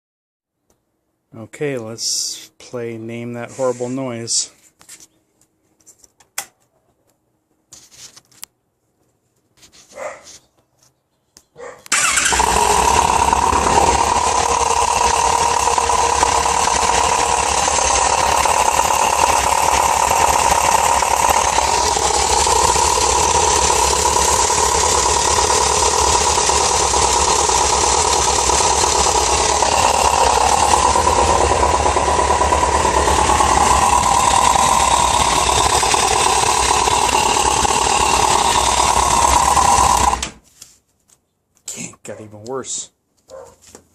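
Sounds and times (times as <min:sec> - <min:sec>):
vehicle engine running harshly: 0:11.9 - 0:40.3.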